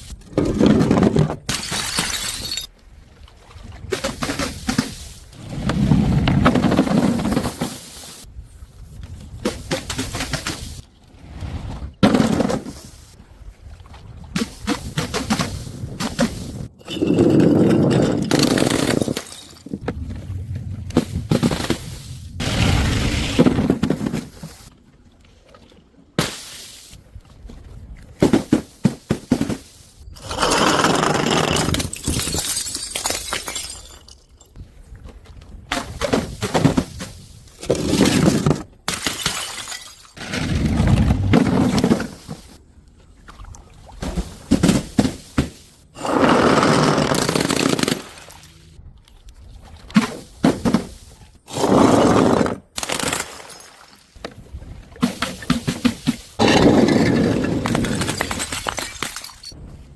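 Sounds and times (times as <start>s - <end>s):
glass bottles smashing: 1.5s - 2.7s, 16.8s - 19.8s, 31.6s - 34.6s, 38.9s - 40.3s, 56.4s - 59.6s.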